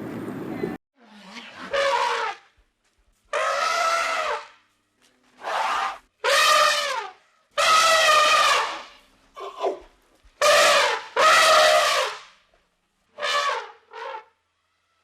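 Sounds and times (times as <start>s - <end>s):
elephant trumpeting: 1.1s - 2.4s, 3.3s - 4.5s, 5.4s - 9.8s, 10.4s - 12.2s.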